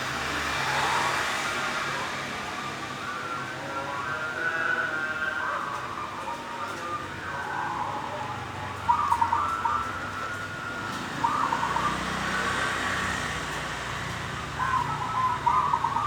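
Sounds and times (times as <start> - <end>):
dove cooing: 7.0 - 12.6, 14.4 - 16.0.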